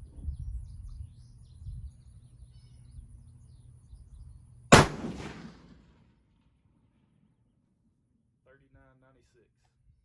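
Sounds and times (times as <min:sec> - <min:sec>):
rifle shot: 0:04.7 - 0:06.2.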